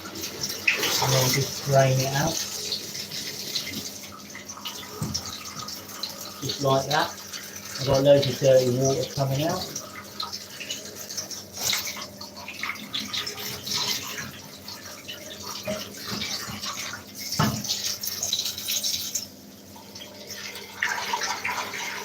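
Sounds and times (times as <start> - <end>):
water splashing into bathtub: 0.0 - 22.0
knock: 17.4 - 17.6.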